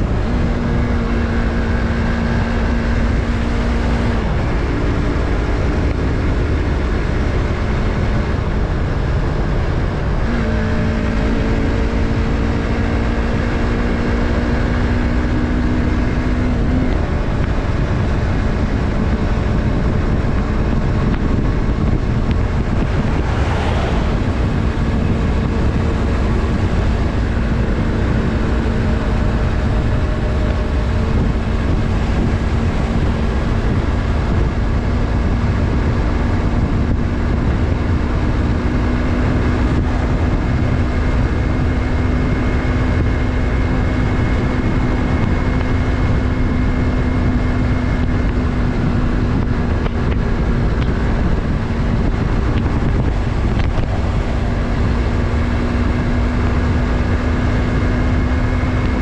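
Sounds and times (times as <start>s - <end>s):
motorcycle engine running: 0.0s - 59.0s
wind noise: 0.0s - 59.0s
brief whoosh: 22.8s - 25.0s.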